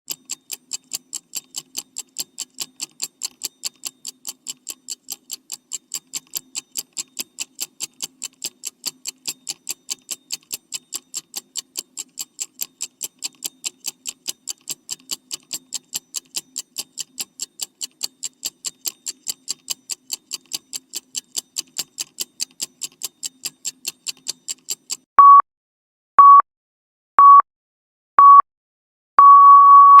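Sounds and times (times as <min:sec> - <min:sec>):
clock-like ticking: 0:00.1 - 0:25.1
long beep: 0:25.2 - 0:25.4, 0:26.2 - 0:26.4, 0:27.2 - 0:27.4, 0:28.2 - 0:28.4, 0:29.2 - 0:30.0
short high beeps: 0:25.2 - 0:25.4, 0:26.2 - 0:26.4, 0:27.2 - 0:27.4, 0:28.2 - 0:28.4, 0:29.2 - 0:30.0.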